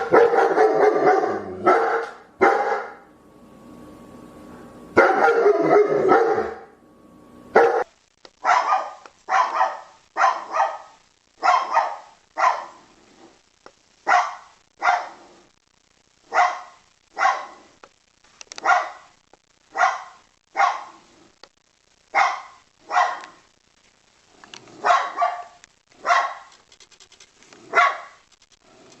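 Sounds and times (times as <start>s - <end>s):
dog barking: 0.0s - 3.0s, 5.0s - 6.7s, 7.6s - 12.8s, 14.0s - 15.2s, 16.3s - 17.7s, 18.6s - 19.1s, 19.7s - 21.0s, 22.1s - 23.4s, 24.8s - 26.5s, 27.6s - 28.2s.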